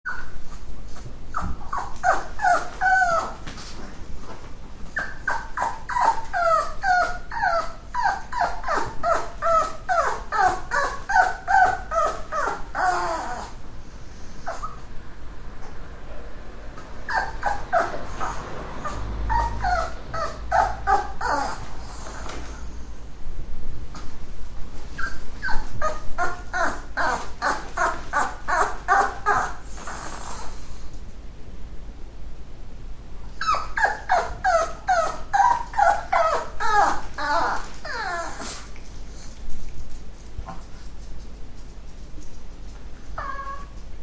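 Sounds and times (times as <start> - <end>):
small dog yapping: 1.3 - 3.8, 4.9 - 13.6, 16.8 - 22.7, 24.9 - 30.6, 33.3 - 38.7, 43.2 - 43.8.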